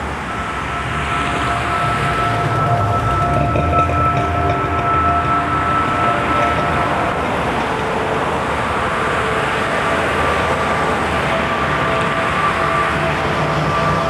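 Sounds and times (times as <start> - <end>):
faint held tones: 0.1 - 9.8.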